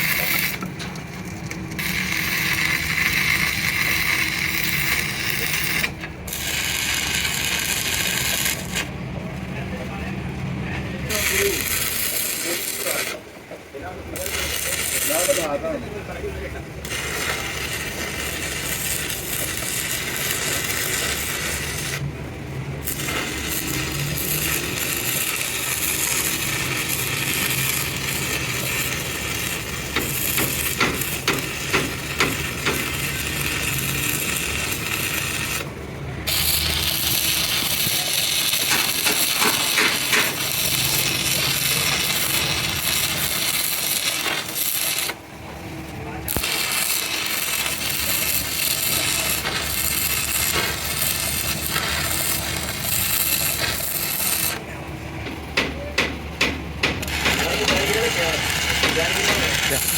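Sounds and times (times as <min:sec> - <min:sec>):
metal rasping and scraping: 0:00.0 - 0:08.9, 0:11.1 - 0:13.3, 0:14.2 - 0:15.6, 0:16.8 - 0:22.0, 0:22.8 - 0:45.2, 0:46.3 - 0:54.6, 0:55.6 - 0:59.9
sharp metal clicks: 0:36.3 - 0:45.2.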